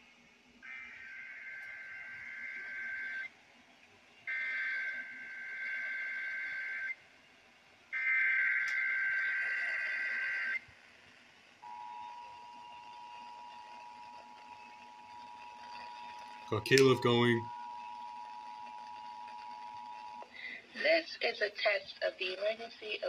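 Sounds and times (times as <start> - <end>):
warbling data tones: 8.0 - 10.6, 11.6 - 21.7
two-tone attention signal: 11.6 - 20.2.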